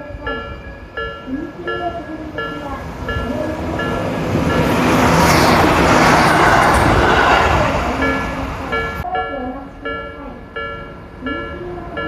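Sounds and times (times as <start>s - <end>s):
level crossing bell ringing: 0.0s - 4.8s, 8.0s - 12.0s
electric train passing: 0.0s - 12.0s.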